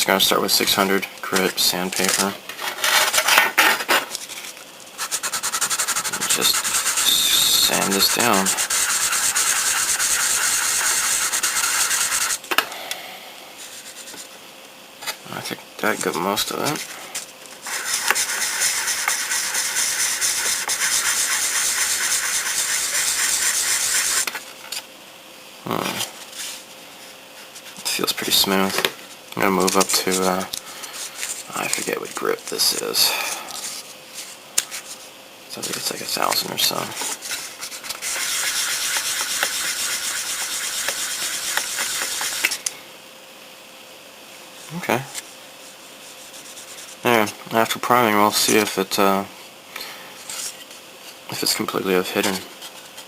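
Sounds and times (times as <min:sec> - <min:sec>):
sandpaper rubbing on plastic: 0:05.0 - 0:12.4, 0:13.6 - 0:14.2, 0:17.6 - 0:24.3, 0:37.0 - 0:42.6, 0:46.0 - 0:47.0.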